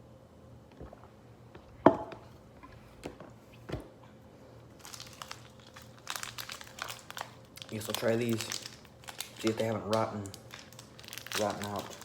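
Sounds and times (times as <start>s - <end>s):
objects knocking and tapping: 1.8s - 3.9s
plastic packaging crinkling: 4.7s - 12.0s.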